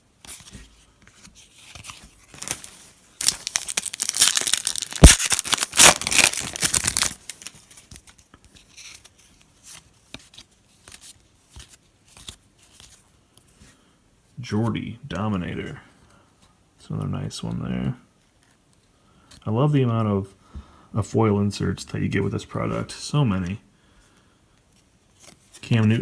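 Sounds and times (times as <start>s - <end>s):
cards ticking and rustling: 0.4s - 13.5s
foil wrapper tearing and crinkling: 2.3s - 7.9s.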